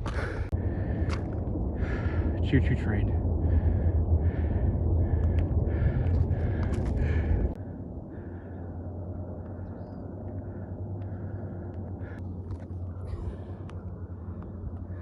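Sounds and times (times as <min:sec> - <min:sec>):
footsteps on rocky trail: 0:00.0 - 0:01.5, 0:05.3 - 0:07.4
low outdoor rumble: 0:00.0 - 0:15.0.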